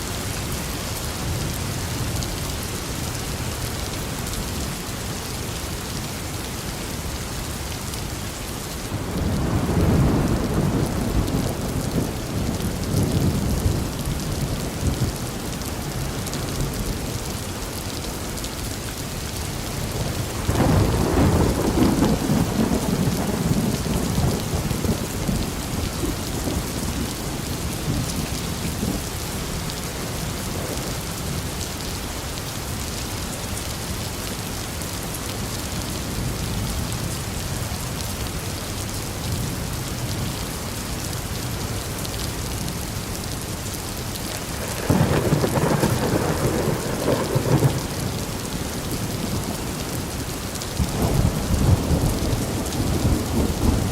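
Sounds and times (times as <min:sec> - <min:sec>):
steady rain: 0:00.0 - 0:53.9
thunder rumbling: 0:20.2 - 0:29.1, 0:44.5 - 0:53.9.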